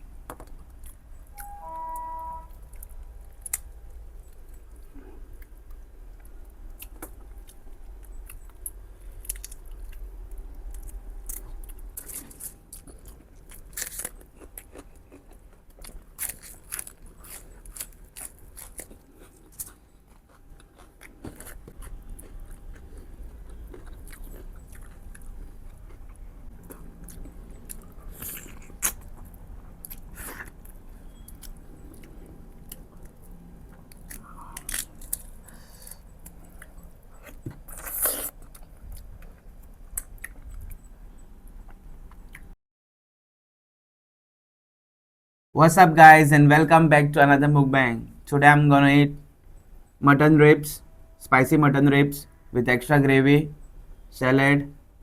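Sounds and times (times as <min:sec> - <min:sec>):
person chewing food: 0:02.6 - 0:42.5.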